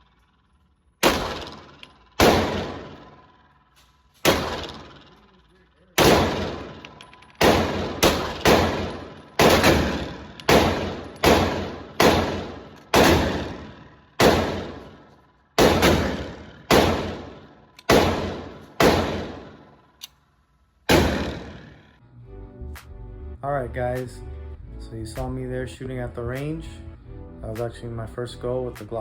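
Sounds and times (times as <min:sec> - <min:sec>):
pistol shots echoing: 0:01.0 - 0:03.4, 0:04.2 - 0:05.4, 0:06.0 - 0:20.0, 0:20.9 - 0:21.9.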